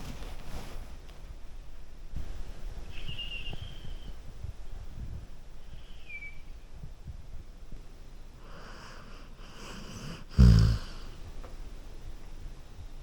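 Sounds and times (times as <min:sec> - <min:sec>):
dog snoring: 0:08.4 - 0:11.2.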